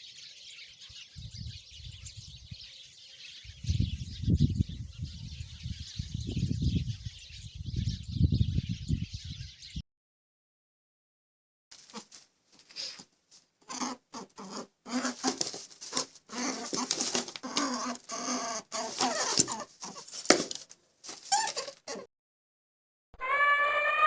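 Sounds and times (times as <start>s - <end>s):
small animal squeaks and chirps: 23.2s - 24.0s.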